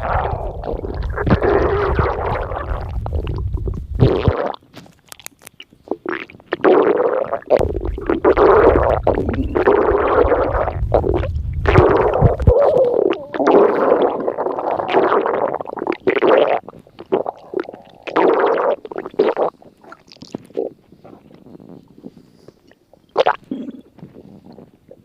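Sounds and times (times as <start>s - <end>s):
deep low rumble: 0.0s - 4.2s, 7.6s - 15.0s
stomach growling and gurgling: 0.0s - 25.0s.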